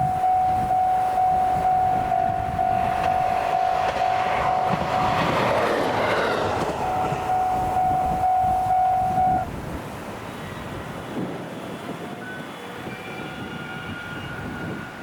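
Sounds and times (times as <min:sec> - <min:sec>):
level-crossing warning bell: 0:00.0 - 0:09.5
train passing: 0:00.0 - 0:15.0.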